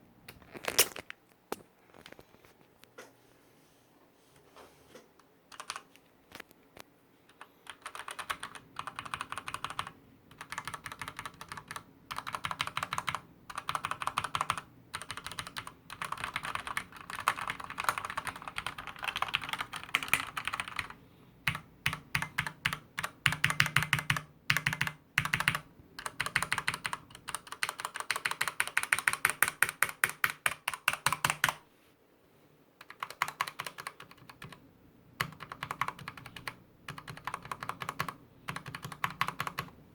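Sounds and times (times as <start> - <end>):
typing on mechanical keyboard: 5.5 - 6.0, 7.3 - 31.6, 32.8 - 34.6, 35.2 - 39.7.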